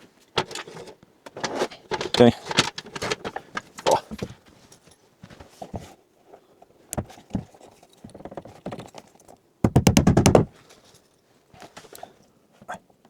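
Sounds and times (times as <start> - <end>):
hands handling cables: 0.0 - 6.0.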